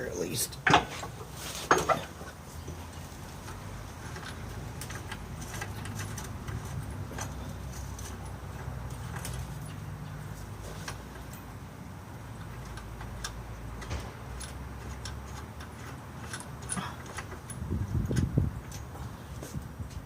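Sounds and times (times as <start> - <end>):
hand tools clicking on metal: 12.4 - 18.9.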